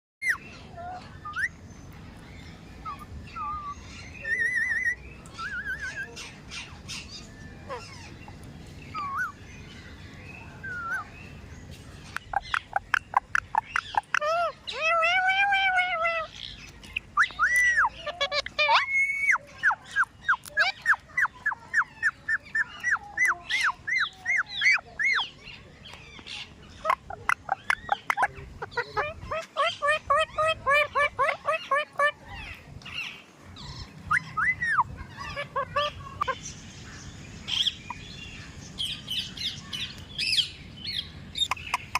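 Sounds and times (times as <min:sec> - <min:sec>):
parakeet shrill calls: 0:02.8 - 0:08.2, 0:12.1 - 0:25.3.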